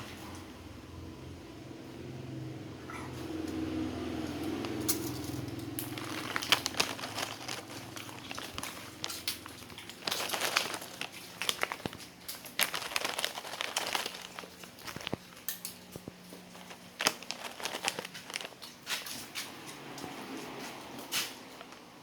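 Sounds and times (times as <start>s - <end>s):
plastic snack packet crinkling: 4.4s - 19.3s.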